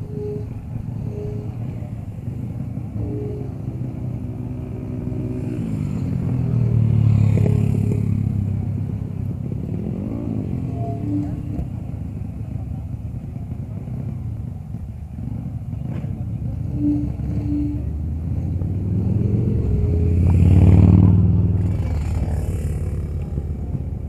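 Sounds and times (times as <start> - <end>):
short beeps: 0.0 - 8.6, 9.7 - 12.0, 16.6 - 21.1
motorcycle engine passing: 0.8 - 24.0.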